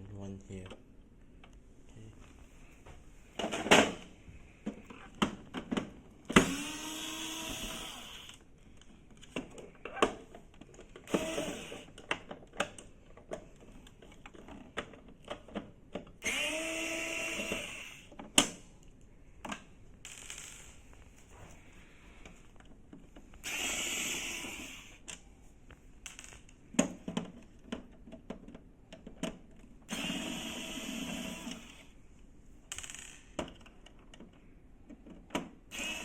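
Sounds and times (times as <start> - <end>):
electric screwdriver whining: 6.3 - 8.4, 11.0 - 12.0, 16.2 - 18.1, 23.4 - 25.0, 29.9 - 31.9, 35.7 - 36.0
screws and bit clicking: 6.4 - 8.4, 11.0 - 12.1, 16.2 - 18.1, 23.4 - 25.0, 29.9 - 31.9, 35.7 - 36.0.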